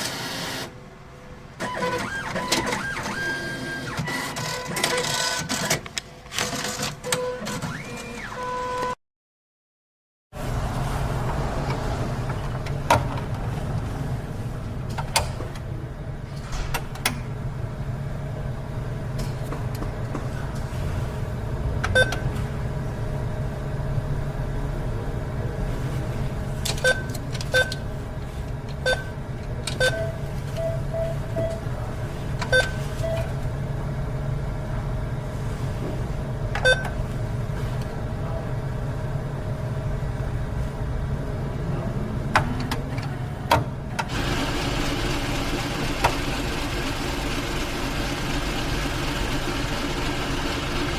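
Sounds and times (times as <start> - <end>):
short electronic beeps: 29.8 - 31.6
machine hum: 43.2 - 50.9.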